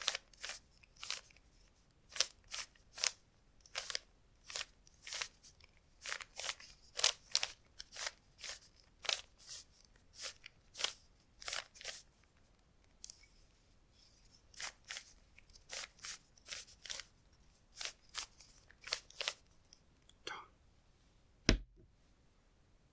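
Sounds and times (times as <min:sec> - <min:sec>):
puzzle cube twisting rasp: 0:00.0 - 0:01.4, 0:02.1 - 0:12.1, 0:14.3 - 0:19.5.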